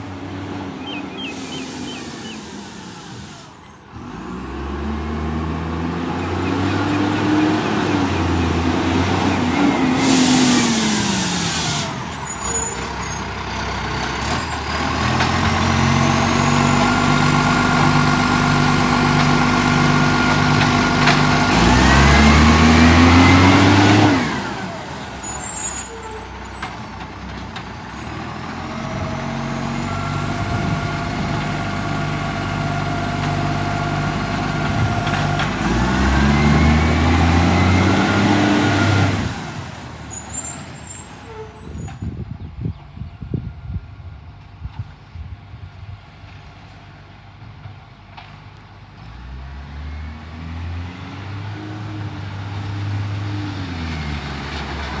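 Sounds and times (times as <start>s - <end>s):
diesel truck engine revving: 0.0s - 41.9s, 48.8s - 55.0s
air hiss: 1.2s - 3.8s, 10.0s - 13.1s.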